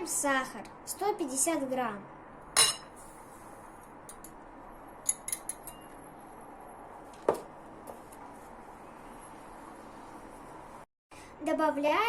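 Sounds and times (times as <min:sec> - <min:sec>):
utensils clinking against a bowl: 0:05.0 - 0:06.0.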